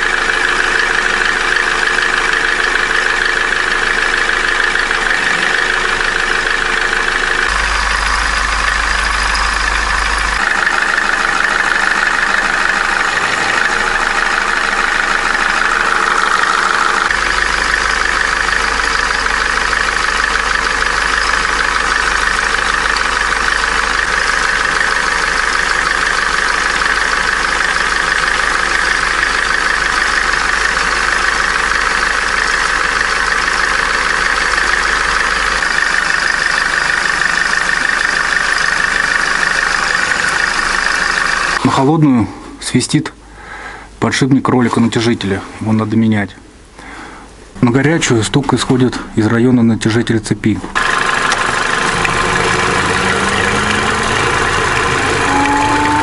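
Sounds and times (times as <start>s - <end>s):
car engine idling: 0.0s - 56.0s
low hum: 0.8s - 41.7s, 51.2s - 56.0s.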